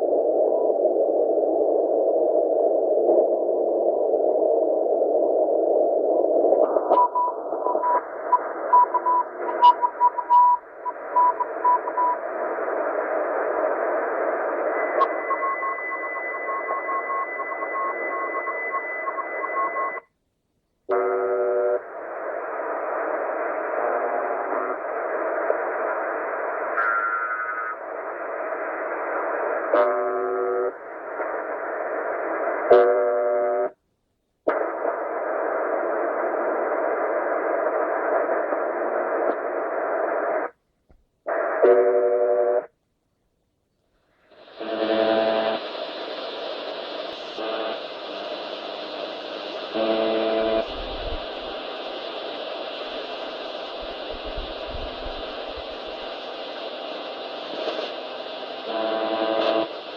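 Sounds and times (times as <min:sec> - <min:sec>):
radio static: 0:00.0 - 0:20.1, 0:20.9 - 0:33.8, 0:34.5 - 0:40.6, 0:41.3 - 0:42.7, 0:44.2 - 0:59.9
high steady whistle: 0:14.5 - 0:20.0.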